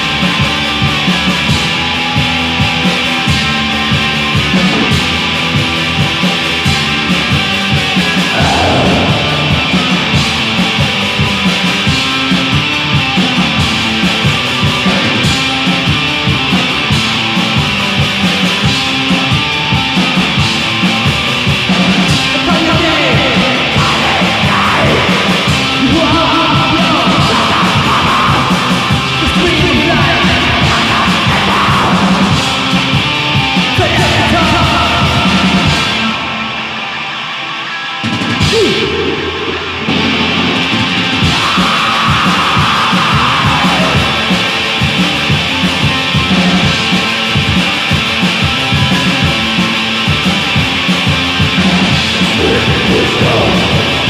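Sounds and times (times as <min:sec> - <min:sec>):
rapid drumming: 0:00.0 - 0:36.6, 0:38.1 - 0:54.0
distorted guitars: 0:00.0 - 0:54.0
harsh vocals: 0:06.8 - 0:50.6, 0:51.4 - 0:54.0.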